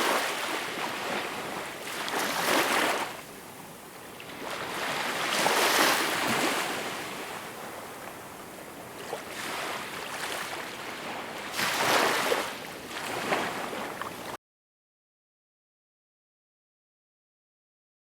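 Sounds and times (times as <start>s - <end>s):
surf hissing on a beach: 0.0s - 12.7s.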